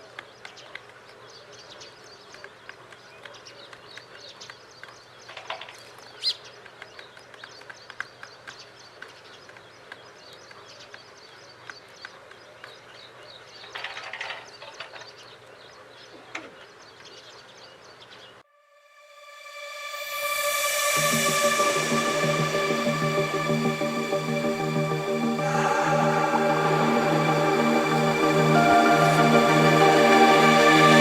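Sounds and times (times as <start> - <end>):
small birds chirping: 0.0 - 18.4.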